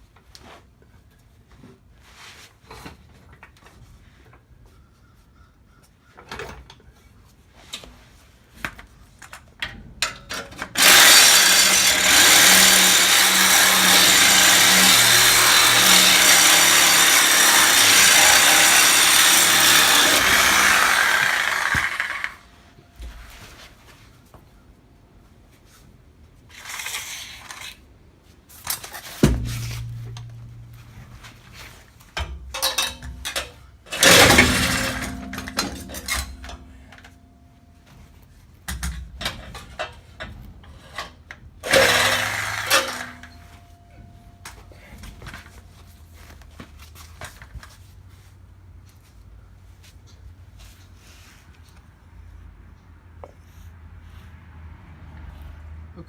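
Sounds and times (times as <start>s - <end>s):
metal knocks and clanks: 6.2s - 6.8s, 29.1s - 37.1s
power tool cutting steel pipe: 10.7s - 22.5s, 32.5s - 37.0s, 41.6s - 43.5s.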